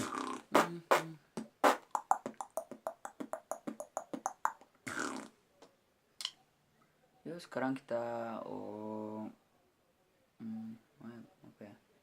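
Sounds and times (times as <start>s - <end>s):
beatboxing: 0.0s - 5.3s.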